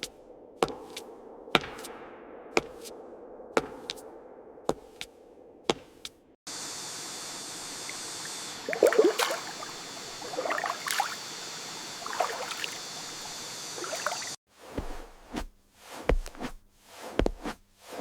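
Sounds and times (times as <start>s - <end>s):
steady hiss: 6.5s - 14.4s.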